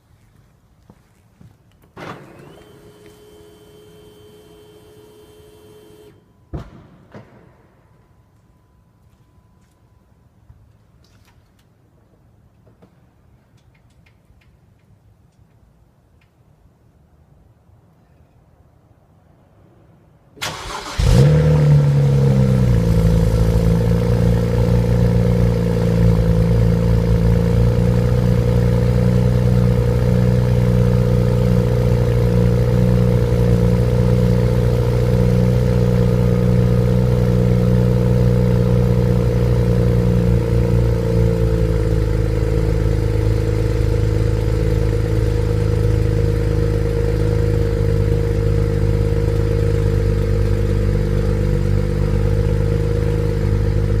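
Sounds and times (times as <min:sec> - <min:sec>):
car engine starting and idling: 0:01.8 - 0:06.7, 0:20.4 - 0:54.0.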